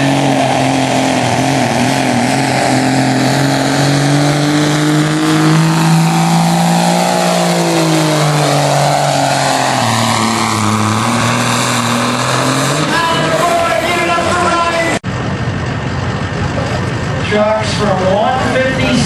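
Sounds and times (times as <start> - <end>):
pickup truck engine revving hard: 0.0 - 14.6.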